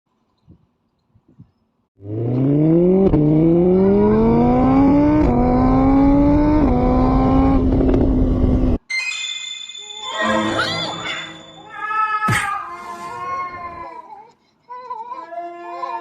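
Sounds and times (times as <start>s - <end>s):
engine accelerating through gears: 2.0s - 8.8s.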